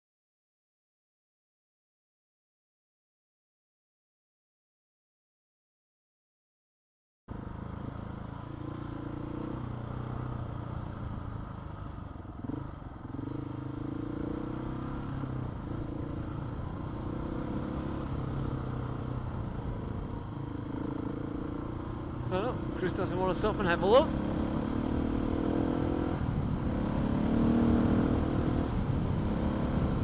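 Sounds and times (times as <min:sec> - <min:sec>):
motorcycle engine running: 0:07.3 - 0:30.0.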